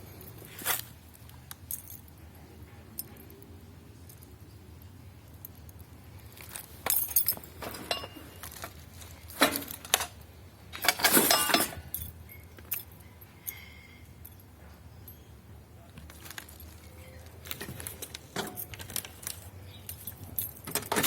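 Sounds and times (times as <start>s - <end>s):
metal pieces clinking and rattling: 6.4s - 10.2s, 10.8s - 14.5s.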